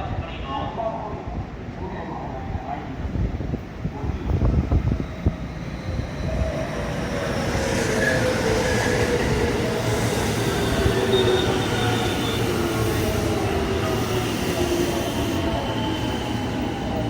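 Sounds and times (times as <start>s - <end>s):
electric train rumbling: 0.0s - 17.0s
whining and squealing wheels: 4.9s - 17.0s.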